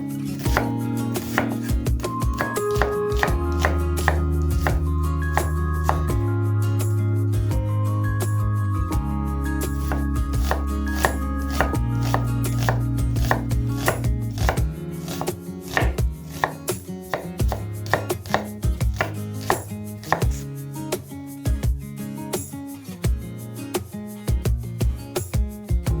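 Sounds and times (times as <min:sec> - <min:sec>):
knife chopping on cutting board: 0:00.4 - 0:06.2, 0:09.8 - 0:20.4.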